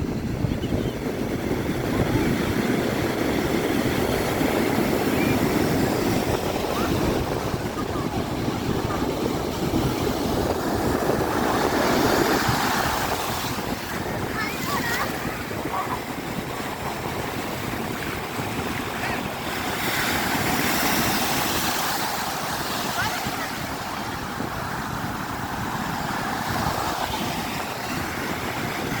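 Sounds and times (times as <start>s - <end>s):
ocean surf on beach: 0.0s - 29.0s
wind buffeting microphone: 0.0s - 29.0s
wave breaking: 3.3s - 29.0s.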